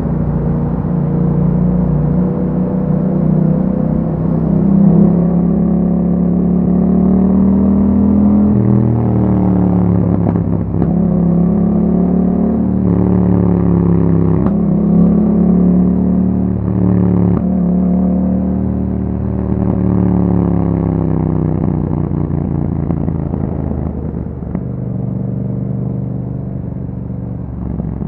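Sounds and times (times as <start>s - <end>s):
motorcycle engine exhaust: 7.6s - 28.0s.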